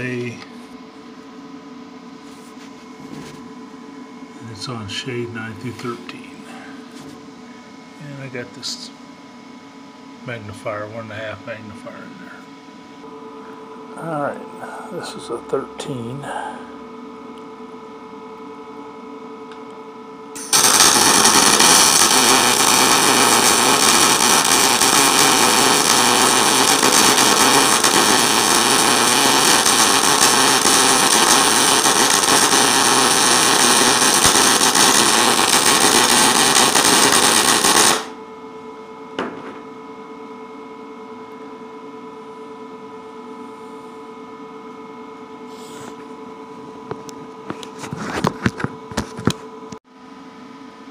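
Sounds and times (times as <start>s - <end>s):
steady hum: 0.0s - 50.9s
welding arc crackling: 20.4s - 38.2s.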